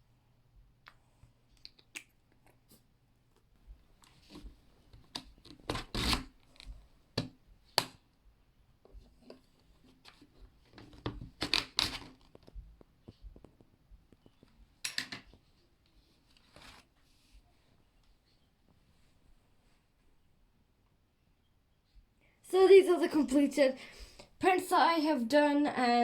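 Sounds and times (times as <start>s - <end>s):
handling rustles scrapes and taps: 3.8s - 8.0s, 8.8s - 19.1s.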